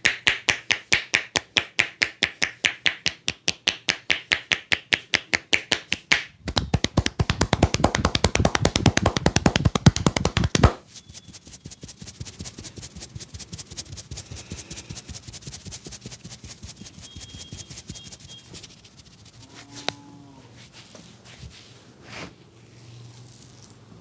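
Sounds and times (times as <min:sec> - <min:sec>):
hands drumming rapidly on head: 0:00.0 - 0:19.4
soft tapping and rubbing: 0:05.9 - 0:20.0, 0:20.6 - 0:22.4.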